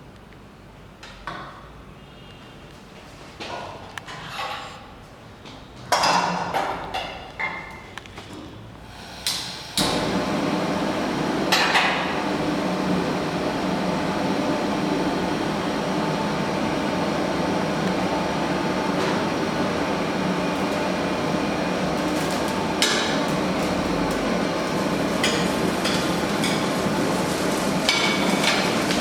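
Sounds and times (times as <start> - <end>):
machine humming: 8.8 - 29.0.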